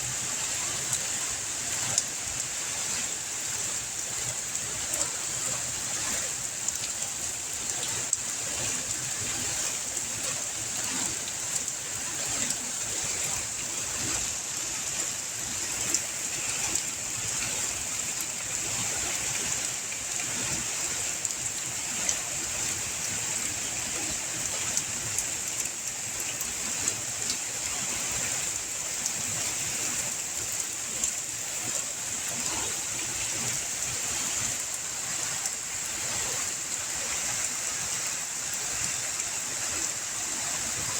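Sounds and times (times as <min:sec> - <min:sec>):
steady rain falling: 0:00.0 - 0:40.9
raindrop ticks: 0:01.8 - 0:09.0, 0:09.6 - 0:13.3, 0:15.8 - 0:16.9, 0:18.5 - 0:22.2, 0:23.4 - 0:33.6.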